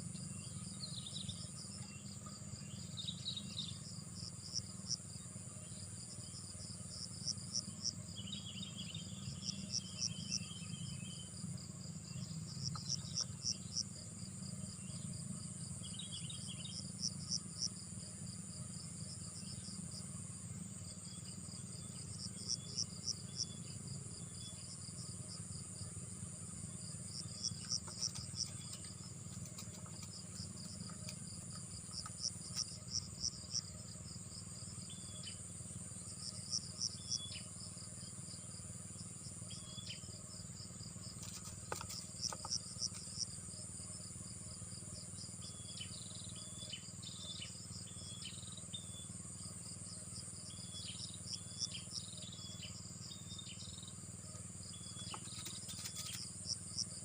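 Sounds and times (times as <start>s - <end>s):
cricket chirps: 0.0s - 57.0s
insects trilling: 0.0s - 57.0s.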